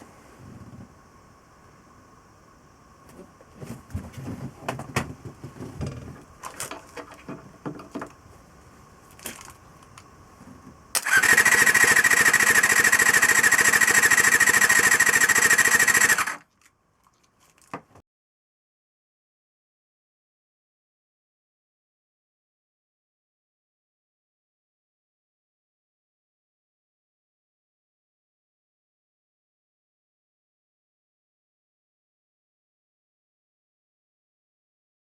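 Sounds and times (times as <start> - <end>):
engine cranking on starter: 11.0 - 16.4.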